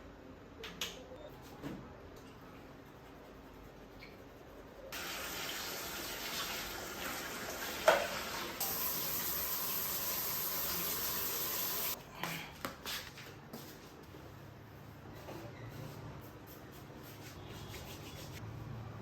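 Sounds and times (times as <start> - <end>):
tap water running into sink: 5.0 - 12.0.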